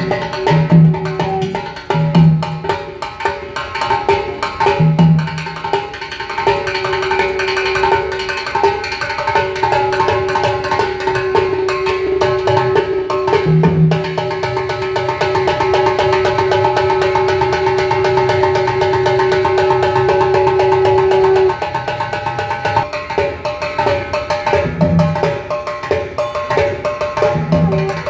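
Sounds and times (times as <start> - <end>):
fast rhythmic percussion: 0.0 - 28.0
conch shell blown: 27.3 - 28.0.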